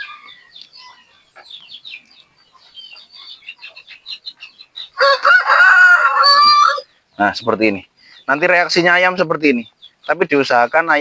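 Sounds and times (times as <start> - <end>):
chickens chirping: 0.0 - 11.0
loud drawn-out chicken call: 5.0 - 6.9.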